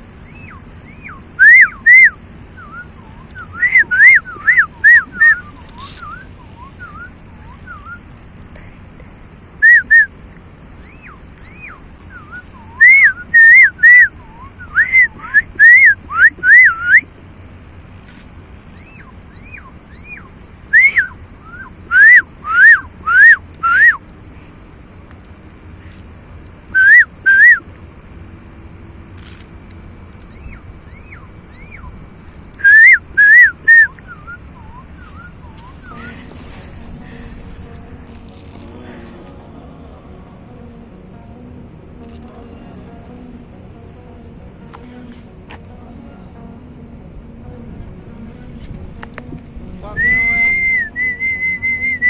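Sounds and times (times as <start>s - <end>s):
person whistling bird calls: 0.2s - 8.1s, 9.6s - 10.1s, 10.8s - 17.1s, 18.7s - 24.0s, 26.8s - 27.7s, 30.3s - 32.0s, 32.6s - 36.6s, 50.0s - 52.0s.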